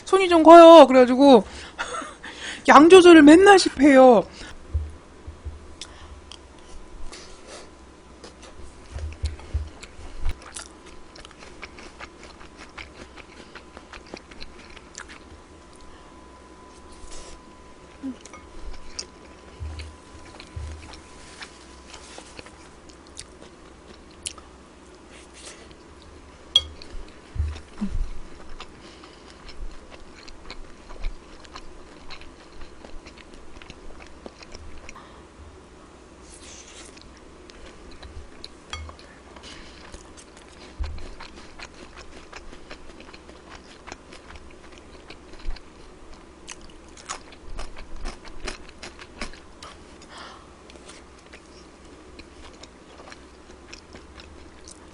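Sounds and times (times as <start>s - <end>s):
chewing crunchy food: 8.2s - 15.9s, 18.0s - 35.0s, 36.6s - 54.9s.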